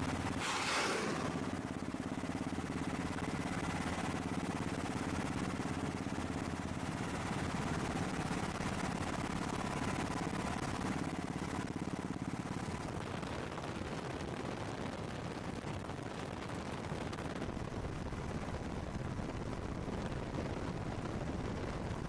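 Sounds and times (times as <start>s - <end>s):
aircraft engine droning: 0.0s - 11.4s.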